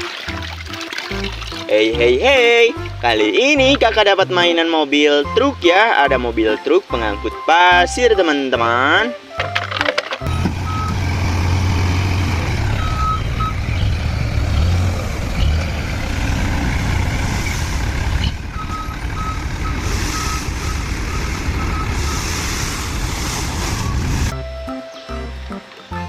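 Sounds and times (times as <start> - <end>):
truck engine rumbling: 9.4 - 24.5
reversing alarm beeping: 10.3 - 14.6, 18.2 - 24.4.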